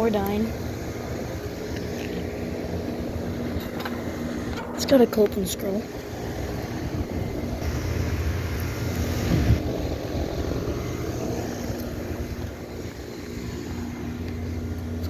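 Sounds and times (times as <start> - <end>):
air conditioner unit humming: 0.0 - 15.0
fan noise: 0.0 - 15.0
rush of air: 6.2 - 14.0.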